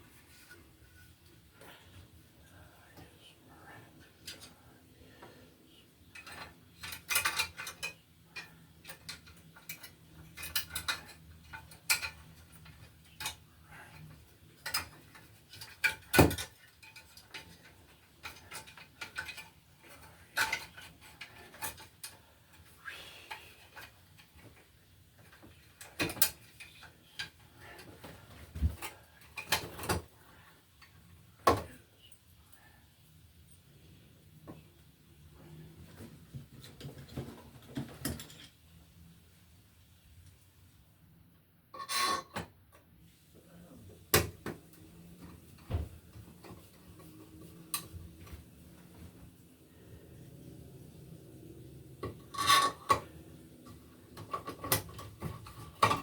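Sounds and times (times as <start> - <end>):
hand tools clicking and clinking: 6.1 - 22.6.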